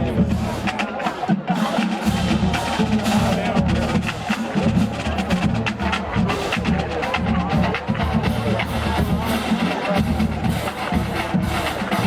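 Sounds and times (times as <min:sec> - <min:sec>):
deep drums: 0:00.0 - 0:12.0.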